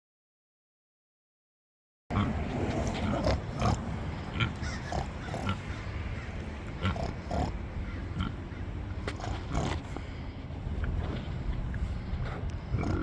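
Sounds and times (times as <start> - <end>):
pig grunting: 2.1 - 8.5, 9.1 - 10.0, 12.7 - 13.0.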